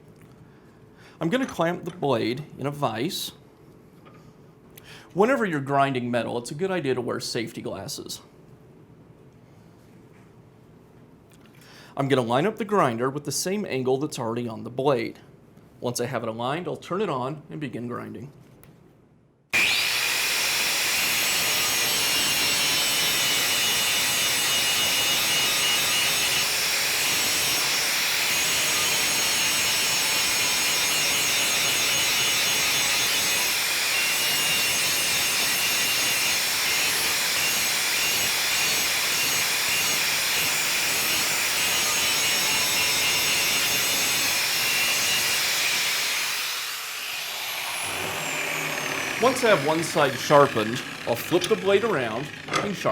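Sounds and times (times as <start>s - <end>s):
grinder whining on steel: 19.6s - 52.9s.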